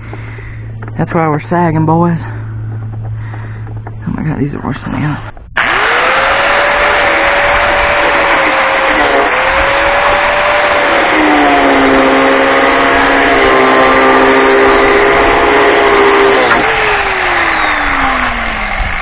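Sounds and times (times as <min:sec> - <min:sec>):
power tool cutting steel: 0:05.6 - 0:19.0.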